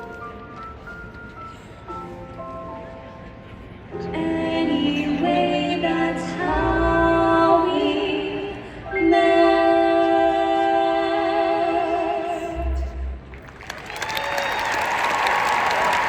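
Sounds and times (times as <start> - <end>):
musical backing track: 0.0 - 11.5
man and woman singing in harmony: 4.1 - 12.9.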